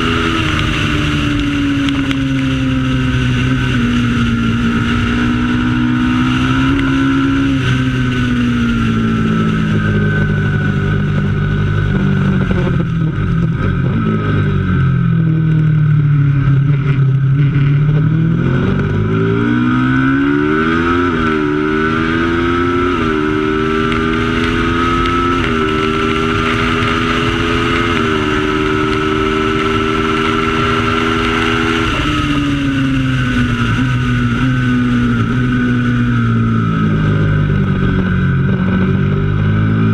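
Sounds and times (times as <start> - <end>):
racing motorcycle engine: 0.0 - 39.9.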